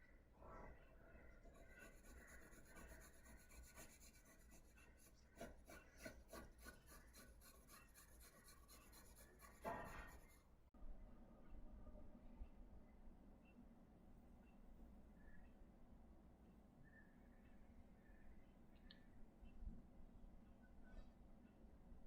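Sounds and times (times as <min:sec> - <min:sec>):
pencil strokes on paper: 0:01.4 - 0:10.4.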